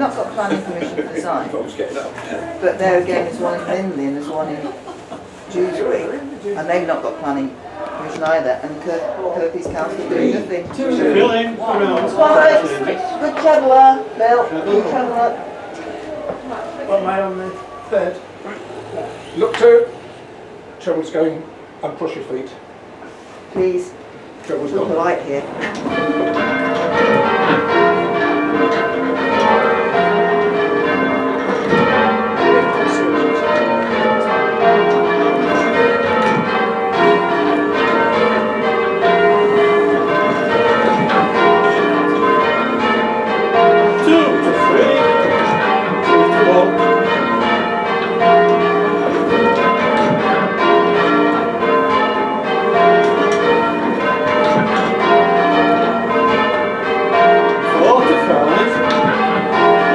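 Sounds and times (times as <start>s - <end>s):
church bells ringing changes: 24.7s - 59.9s.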